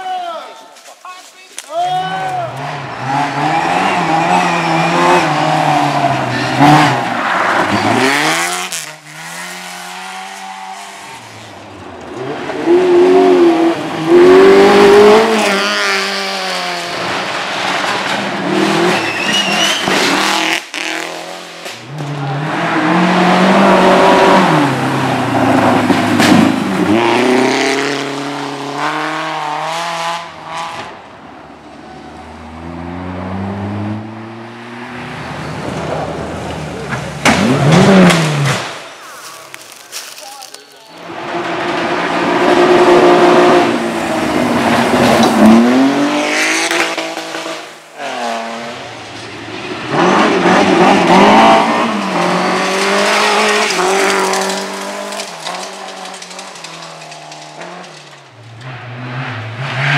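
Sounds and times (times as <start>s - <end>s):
rally car engines revving: 2.1s - 39.9s, 40.9s - 59.9s
tyre squeal: 3.4s - 8.3s, 18.8s - 20.4s.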